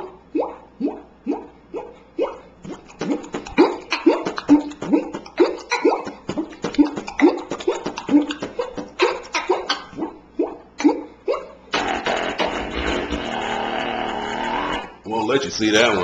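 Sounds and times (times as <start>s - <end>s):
sharp mouth clicks: 2.2s - 11.0s
beatbox mouth pops: 2.3s - 11.0s, 11.7s - 15.0s.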